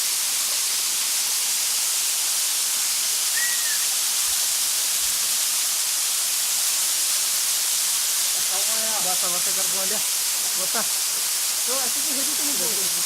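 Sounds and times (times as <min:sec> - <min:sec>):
waterfall rushing: 0:00.0 - 0:13.0.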